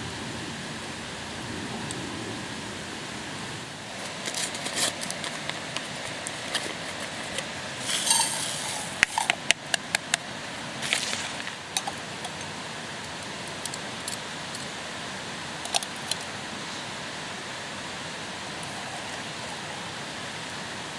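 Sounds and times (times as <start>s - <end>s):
outdoor hiss: 0.0s - 20.9s
metal cookware clinking: 7.8s - 9.3s.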